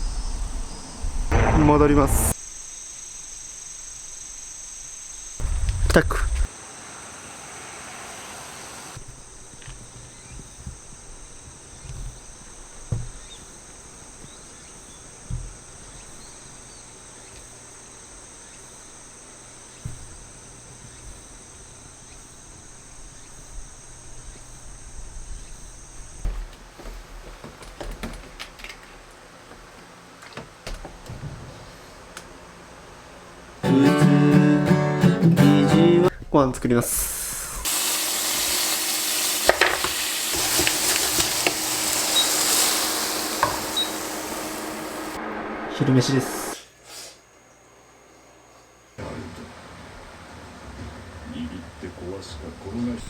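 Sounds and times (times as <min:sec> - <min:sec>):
dull low thumps: 0:00.0 - 0:02.4, 0:05.4 - 0:06.5
insects chirring: 0:00.0 - 0:49.0.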